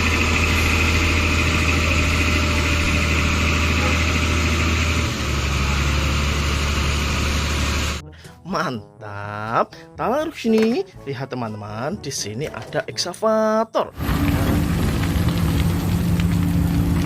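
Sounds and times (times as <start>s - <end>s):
engine idling: 0.0s - 8.0s.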